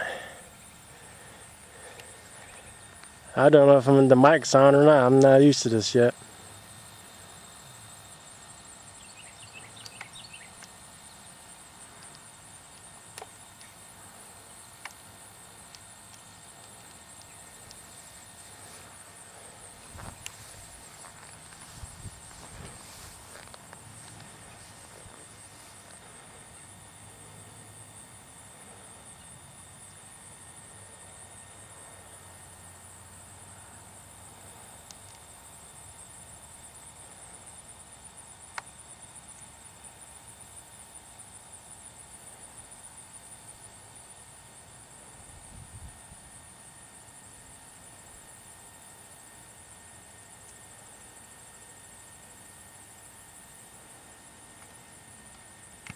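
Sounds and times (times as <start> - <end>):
high-pitched insect chorus: 0.0 - 55.9
small clicks: 9.8 - 10.8.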